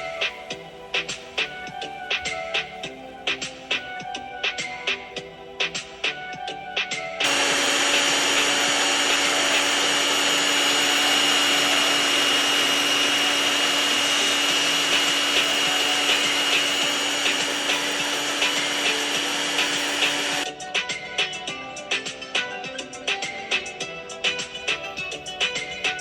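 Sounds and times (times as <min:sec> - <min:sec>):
electric mixer motor whining: 0:07.2 - 0:20.5.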